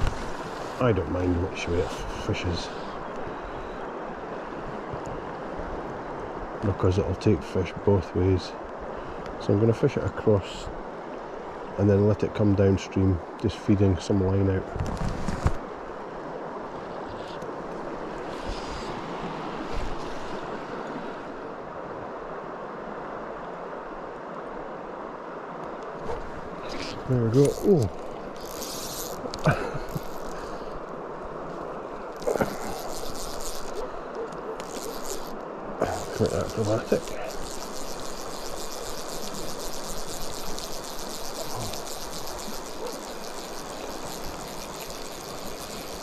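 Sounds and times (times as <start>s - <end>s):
river water rushing: 15.6s - 46.0s.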